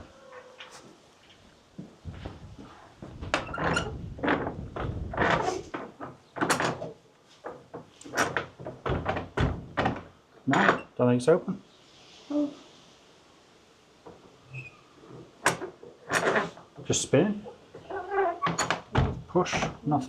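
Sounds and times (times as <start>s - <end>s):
door latch clunking and rattling: 3.2s - 7.0s, 7.6s - 10.9s, 15.4s - 16.9s, 17.8s - 19.9s.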